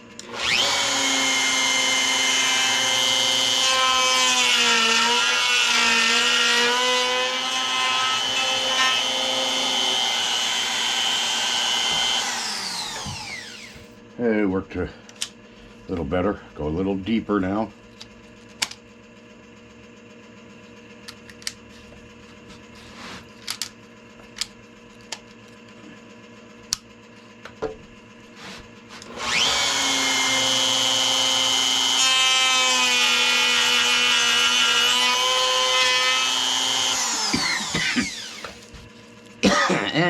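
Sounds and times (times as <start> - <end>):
router whining while cutting wood: 0.0 - 14.0, 29.0 - 38.8.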